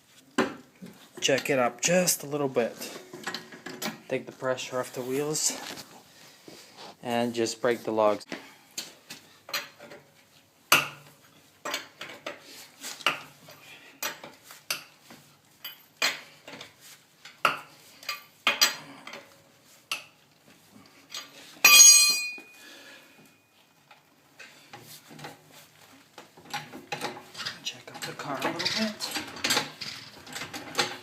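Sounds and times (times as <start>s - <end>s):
ringing metal clang: 21.6s - 22.6s.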